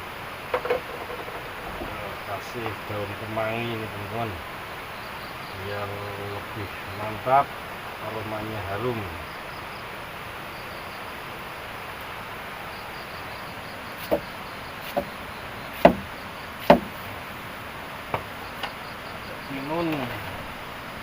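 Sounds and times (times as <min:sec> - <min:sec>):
insects humming: 0:00.0 - 0:21.0
sharp knocks: 0:00.5 - 0:02.9, 0:14.0 - 0:14.3, 0:14.9 - 0:15.1, 0:15.8 - 0:17.0.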